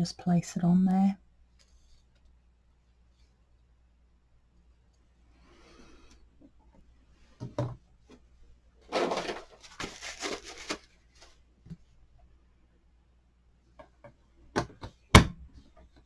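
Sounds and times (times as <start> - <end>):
quick tapping and rubbing: 8.9 - 11.0.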